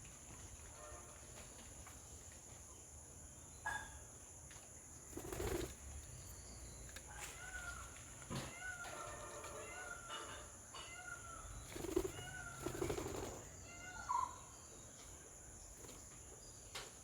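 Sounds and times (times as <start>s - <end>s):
wings fluttering: 5.1s - 5.9s, 11.6s - 13.6s.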